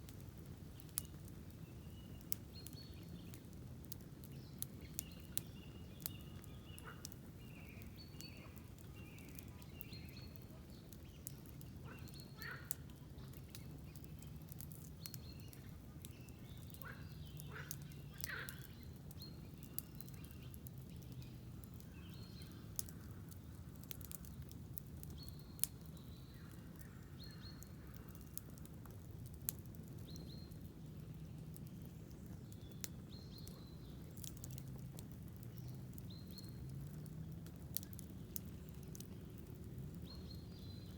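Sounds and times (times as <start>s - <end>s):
campfire crackling and popping: 0.0s - 40.9s
songbirds chirping: 0.0s - 40.9s.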